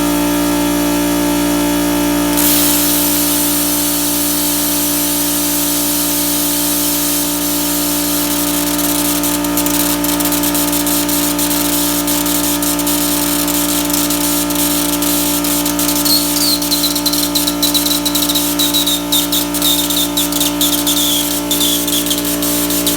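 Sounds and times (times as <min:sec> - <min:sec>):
machine hum: 0:02.0 - 0:22.9
plasma cutter hiss: 0:02.3 - 0:22.9
sharp crackles: 0:02.3 - 0:22.9
high wavering tone: 0:13.8 - 0:22.9.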